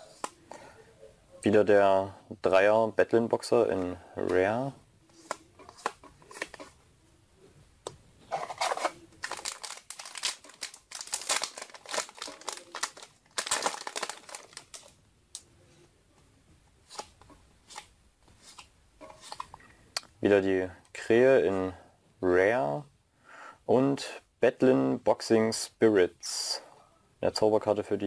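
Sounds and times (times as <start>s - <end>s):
foil wrapper crinkling and tearing: 8.5s - 14.9s.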